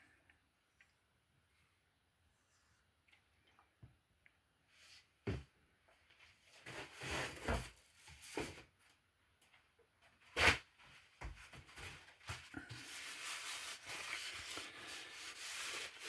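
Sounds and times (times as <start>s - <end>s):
rubbing and rustling: 10.2s - 16.0s.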